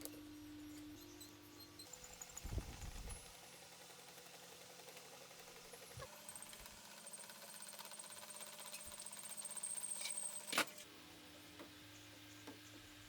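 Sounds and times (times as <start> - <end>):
small motor tool whirring: 0.6 - 10.9.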